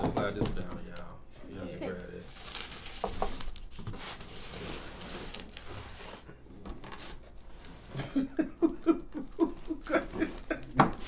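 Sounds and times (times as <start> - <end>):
rustling handling noise: 2.2 - 11.0
person laughing: 7.9 - 11.0.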